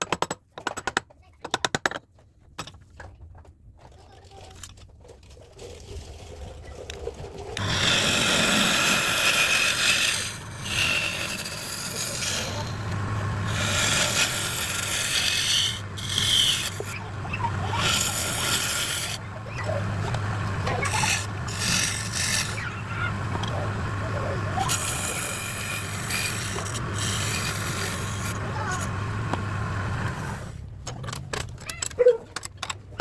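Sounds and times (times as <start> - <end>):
tool scraping across wood: 7.6 - 30.6.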